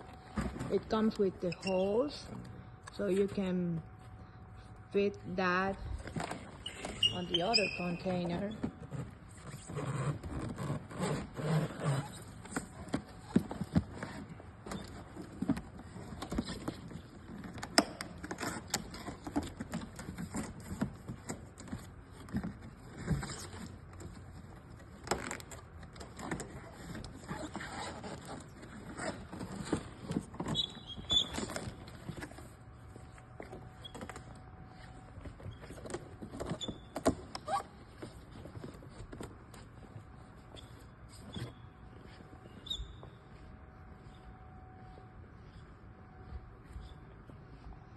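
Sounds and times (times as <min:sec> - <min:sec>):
cardboard rustling and scraping: 0:05.9 - 0:42.7.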